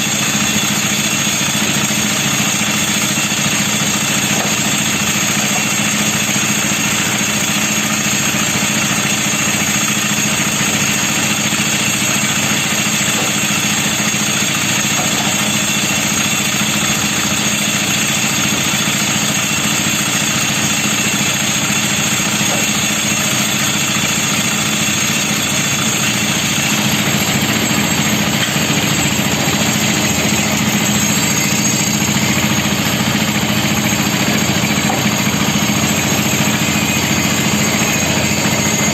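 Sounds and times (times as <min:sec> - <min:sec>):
concrete mixer engine drone: 0:00.0 - 0:38.9.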